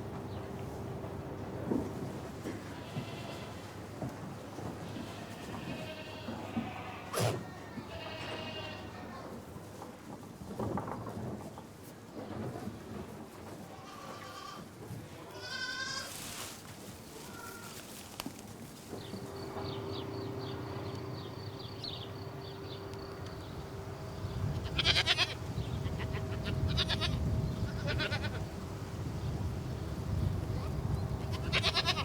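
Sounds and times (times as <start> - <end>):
livestock bleating: 2.4 - 3.7, 4.8 - 9.2, 13.7 - 14.7, 15.3 - 16.2, 24.5 - 28.5, 30.6 - 32.0
low hum and rumble: 19.0 - 32.0.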